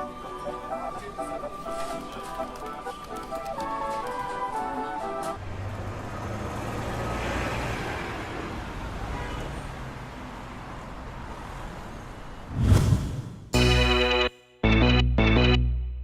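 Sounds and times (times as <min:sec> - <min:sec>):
loud low whoosh: 0:12.5 - 0:13.6.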